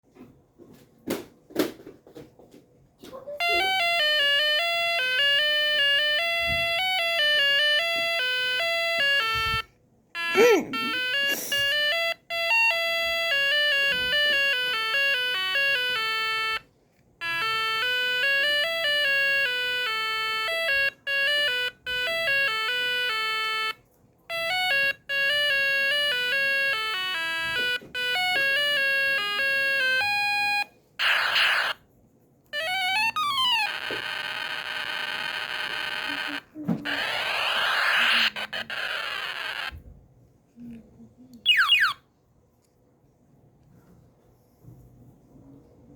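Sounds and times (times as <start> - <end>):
tinny electronic beeping tunes: 3.4 - 9.6, 10.2 - 16.6, 17.2 - 31.8, 32.6 - 39.8, 41.4 - 42.0.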